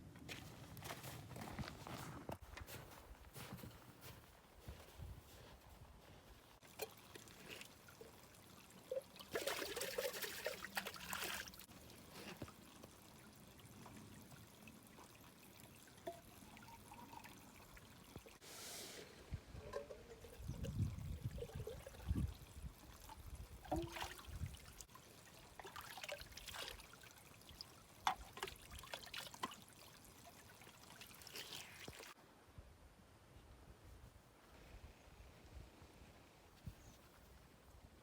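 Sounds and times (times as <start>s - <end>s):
water trickling and pouring: 6.6s - 18.4s, 19.5s - 32.2s.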